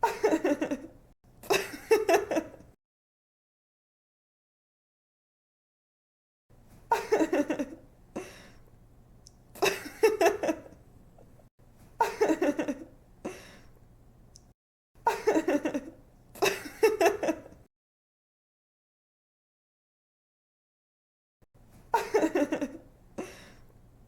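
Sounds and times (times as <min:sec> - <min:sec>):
young woman laughing: 0:00.0 - 0:02.7, 0:06.9 - 0:07.8, 0:09.6 - 0:10.8, 0:12.0 - 0:12.9, 0:15.0 - 0:17.6, 0:21.9 - 0:23.4
faint steady hum: 0:06.6 - 0:17.6, 0:21.6 - 0:24.0.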